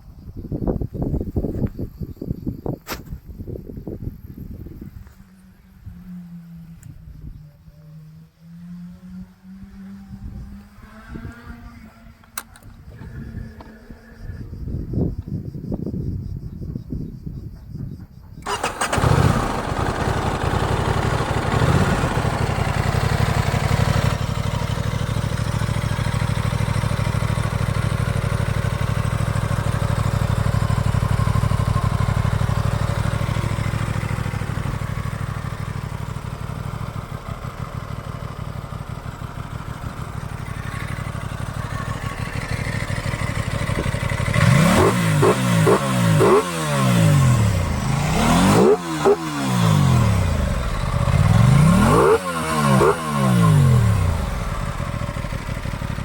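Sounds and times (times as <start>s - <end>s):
motorcycle engine revving and idling: 5.0s - 15.4s, 17.6s - 56.0s.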